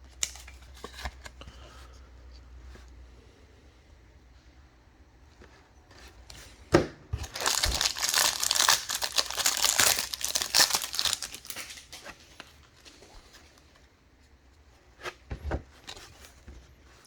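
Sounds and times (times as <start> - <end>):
wrapper crinkling and tearing: 7.2 - 12.4.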